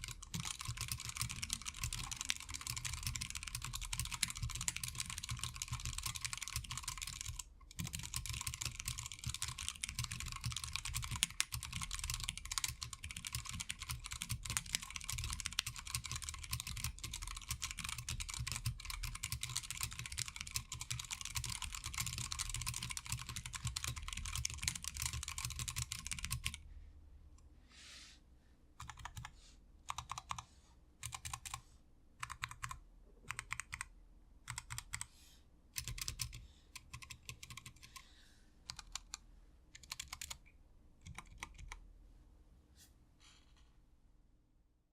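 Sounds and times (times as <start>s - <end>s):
mechanical keyboard typing: 0.0s - 26.6s, 28.8s - 29.3s, 29.9s - 30.4s, 31.0s - 31.6s, 32.2s - 33.9s, 34.5s - 35.1s, 35.8s - 38.0s, 38.7s - 39.2s, 39.8s - 40.4s, 41.0s - 41.8s.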